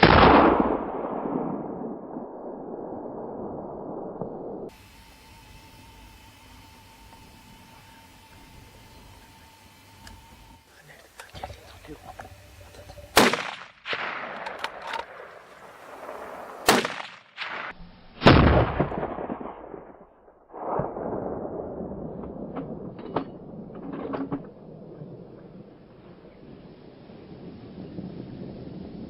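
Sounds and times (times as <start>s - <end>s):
gunshots with echo: 0.0s - 2.1s, 13.1s - 19.9s.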